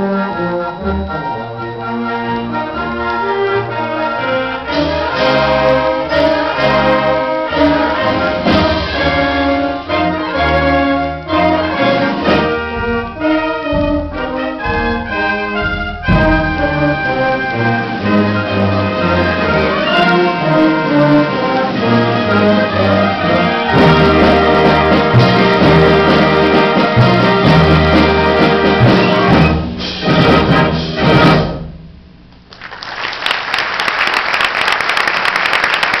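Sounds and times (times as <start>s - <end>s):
concert band playing: 0.0s - 32.2s
audience applauding: 32.5s - 36.0s.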